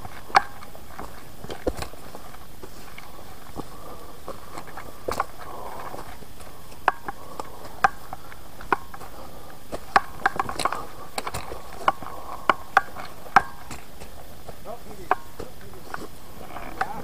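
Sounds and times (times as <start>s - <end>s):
faint steady hiss: 0.0s - 17.0s
footstep clicks and knocks: 0.0s - 17.0s.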